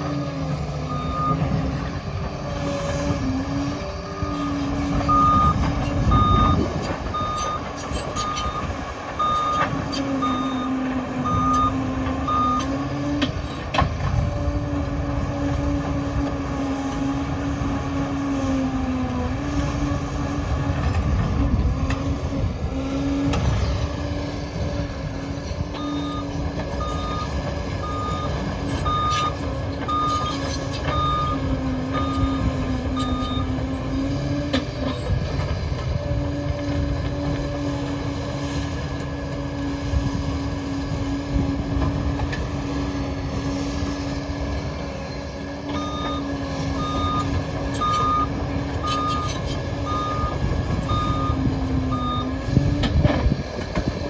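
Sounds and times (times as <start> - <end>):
diesel engine droning: 0.0 - 54.0
reversing alarm beeps: 0.8 - 1.6, 4.2 - 12.8, 25.8 - 33.6, 45.8 - 52.4.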